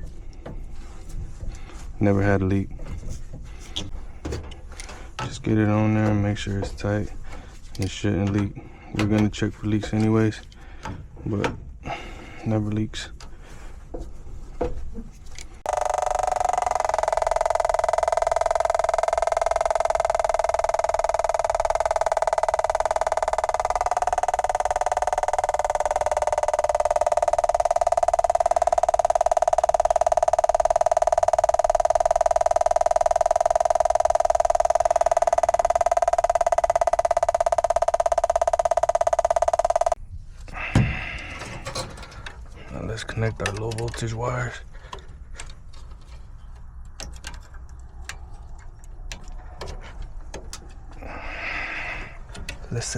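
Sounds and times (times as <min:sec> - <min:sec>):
droning hum of held tones: 0:15.4 - 0:52.9.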